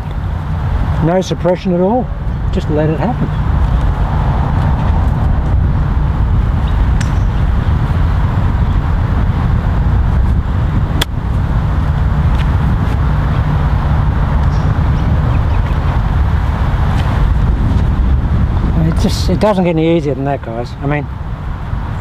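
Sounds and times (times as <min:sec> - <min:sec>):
low outdoor rumble: 0:00.0 - 0:22.0
golf club striking ball: 0:06.6 - 0:07.6.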